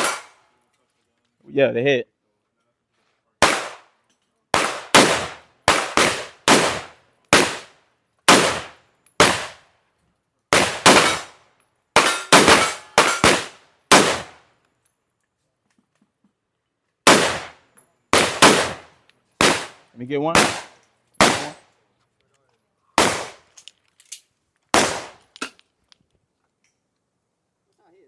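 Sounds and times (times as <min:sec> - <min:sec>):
gunshots with echo: 0:00.0 - 0:00.4, 0:03.4 - 0:03.8, 0:04.6 - 0:07.7, 0:08.3 - 0:09.6, 0:10.6 - 0:11.3, 0:12.0 - 0:14.4, 0:17.1 - 0:17.6, 0:18.2 - 0:21.6, 0:23.0 - 0:23.4, 0:24.8 - 0:25.2.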